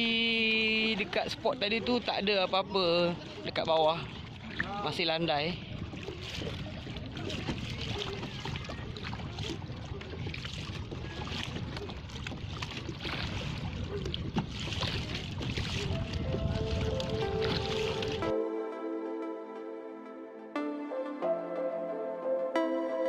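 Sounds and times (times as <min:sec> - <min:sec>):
paddle splashing in water: 0:00.0 - 0:18.4
wind rumble on microphone: 0:03.2 - 0:18.3.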